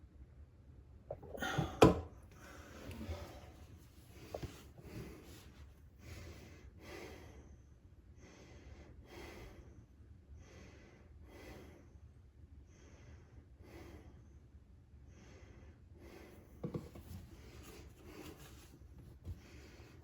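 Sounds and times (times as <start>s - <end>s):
person breathing: 1.2s - 7.6s, 8.2s - 9.8s.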